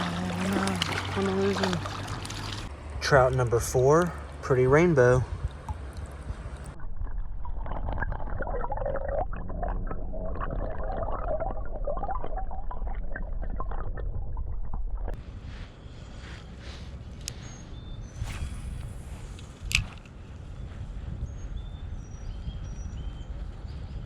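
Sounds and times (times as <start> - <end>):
creek ambience: 0.0 - 6.8
muffled water gurgling: 5.3 - 15.4.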